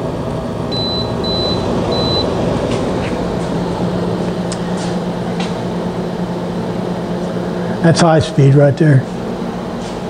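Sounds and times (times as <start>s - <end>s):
air conditioner fan hum: 0.0s - 10.0s
short high beeps: 0.8s - 2.3s.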